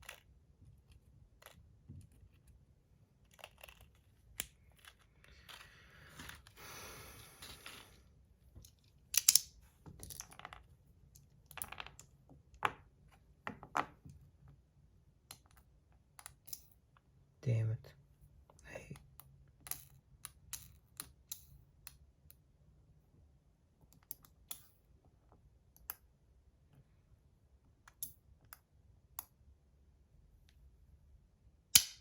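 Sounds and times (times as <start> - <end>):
metal balls clicking: 3.2 - 6.5, 8.6 - 12.2.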